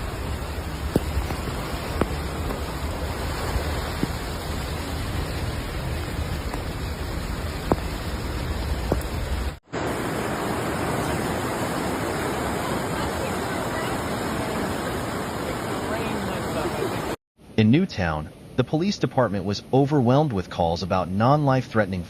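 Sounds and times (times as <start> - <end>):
heavy water rushing: 0.0 - 17.2.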